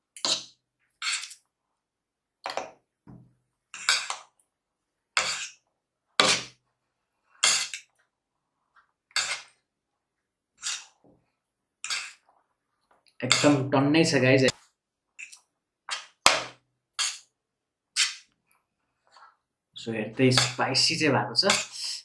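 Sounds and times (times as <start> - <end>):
cutlery scraping on plate: 0.2 - 1.4, 3.8 - 4.3, 5.2 - 5.6, 6.2 - 6.5, 7.4 - 7.9, 9.2 - 9.6, 10.6 - 11.0, 11.8 - 12.2, 13.3 - 13.6, 15.2 - 17.3, 18.0 - 18.3, 20.3 - 20.6, 21.5 - 21.8.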